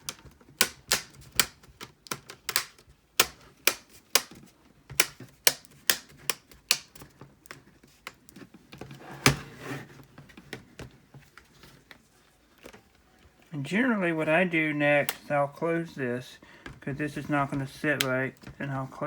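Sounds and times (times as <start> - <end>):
plastic clips snapping into place: 0.0 - 7.6.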